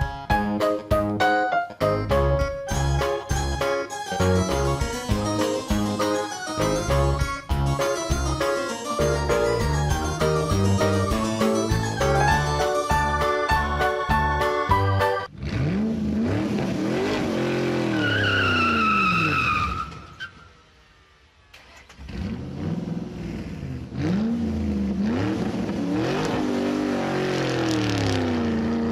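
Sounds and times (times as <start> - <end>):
keyboard music: 0.0 - 15.3
car engine revving: 15.3 - 19.3, 20.9 - 28.9
tyre squeal: 17.8 - 20.6.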